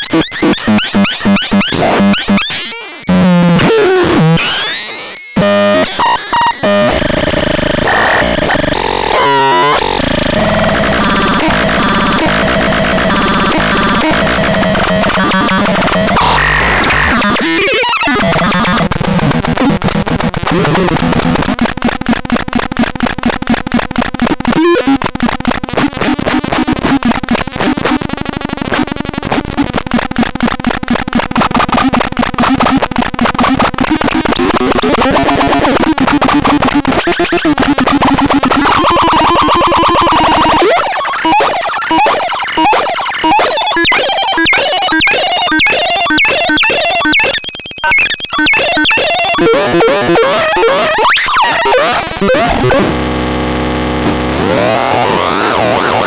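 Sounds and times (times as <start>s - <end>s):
harsh buzzing synthesizer tones: 0.0s - 56.0s.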